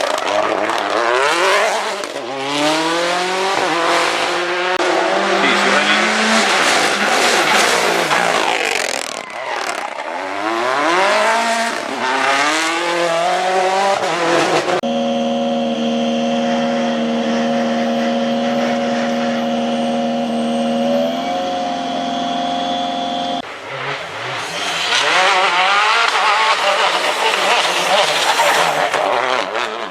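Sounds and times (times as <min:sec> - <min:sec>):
rally car engine revving: 0:00.0 - 0:29.9
engine at steady pitch: 0:14.8 - 0:23.6.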